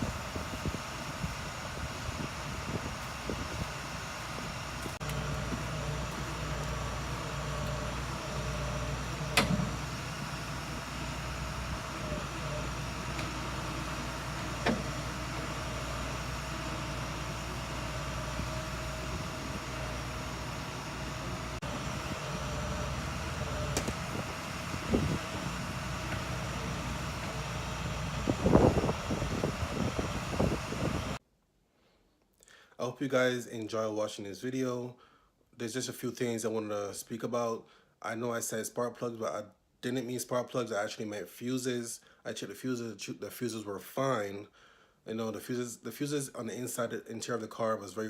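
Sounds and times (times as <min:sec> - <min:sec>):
truck engine running: 0:00.0 - 0:31.2.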